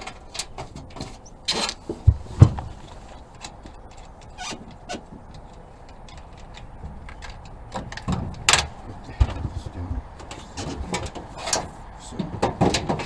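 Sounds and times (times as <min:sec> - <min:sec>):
short scrape: 0:11.3 - 0:11.8.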